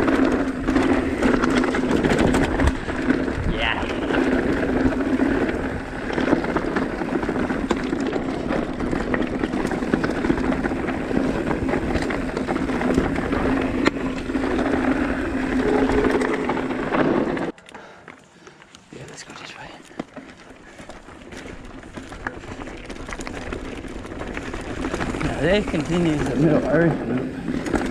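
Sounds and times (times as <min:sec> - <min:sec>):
bike rattles and clicks: 0:00.0 - 0:27.9
tyre noise on rocky trail: 0:00.0 - 0:27.9.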